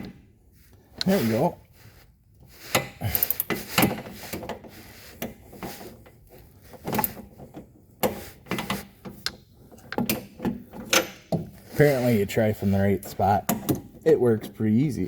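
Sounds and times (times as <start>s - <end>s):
hand tools knocking and scraping: 2.6s - 14.1s.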